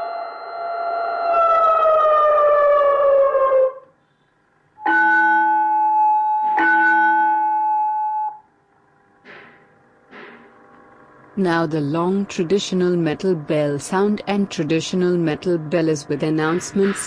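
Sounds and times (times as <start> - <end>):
siren tone through horn speaker: 0.0 - 3.9, 4.8 - 8.5.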